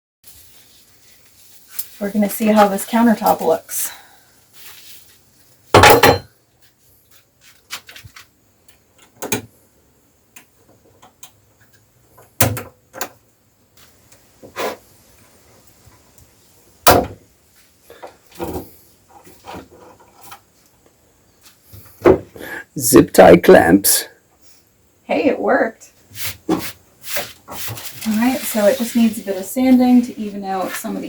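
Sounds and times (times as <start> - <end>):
faint rustling: 0.3 - 5.7, 26.1 - 31.0
clamps knocking and clunking: 5.8 - 6.3.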